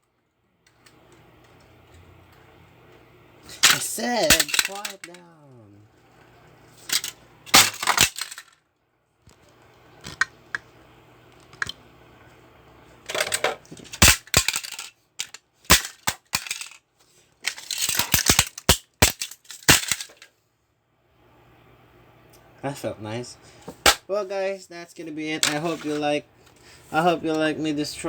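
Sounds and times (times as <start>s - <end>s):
plastic toy being smashed: 3.5s - 5.2s, 6.9s - 8.6s, 13.1s - 16.8s, 17.5s - 20.3s, 23.7s - 24.1s.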